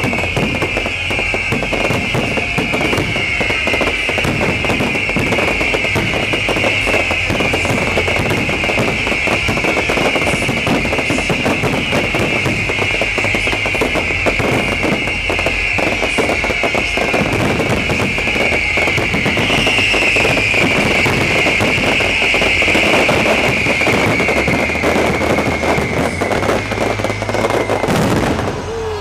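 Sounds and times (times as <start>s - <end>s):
shrill falling whistling: 0.0s - 28.8s
fireworks bangs and crackling: 0.0s - 29.0s.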